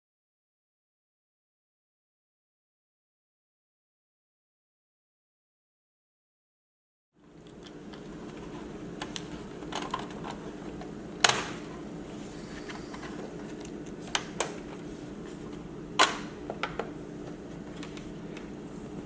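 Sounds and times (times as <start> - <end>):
steady low hum: 7.2 - 19.0.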